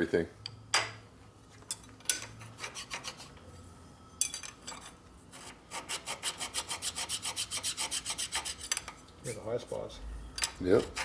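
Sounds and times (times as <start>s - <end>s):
rasping strokes on metal: 5.3s - 8.7s, 10.7s - 11.0s.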